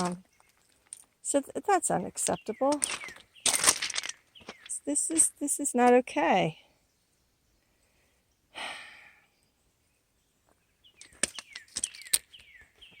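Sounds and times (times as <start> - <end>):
person sighing: 8.5 - 9.3.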